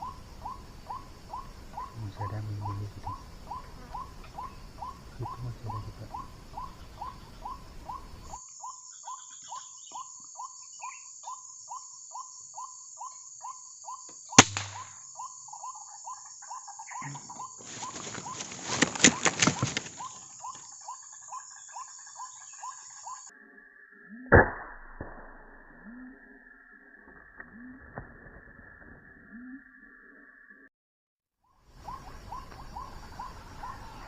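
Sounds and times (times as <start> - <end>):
insect buzzing: 0.0 - 8.7, 16.9 - 23.3
bird calling: 0.0 - 23.3, 31.7 - 34.0
air rifle shot: 14.4 - 15.0
rustling and flapping: 17.4 - 20.3.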